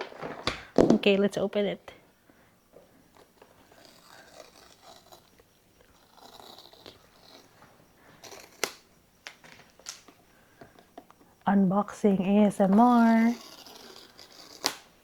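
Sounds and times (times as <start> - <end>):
packaging rustling: 3.1 - 11.3.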